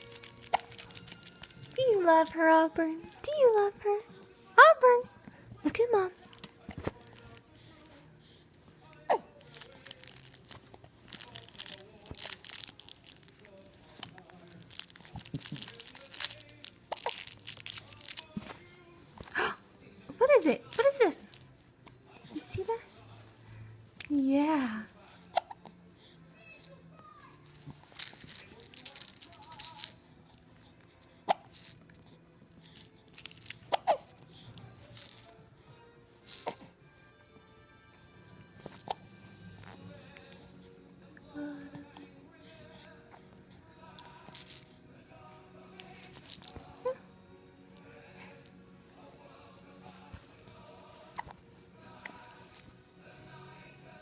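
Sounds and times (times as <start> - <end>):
close rustling and crackling: 0.0 - 2.4, 9.4 - 19.4
baby hiccuping: 33.7 - 34.1.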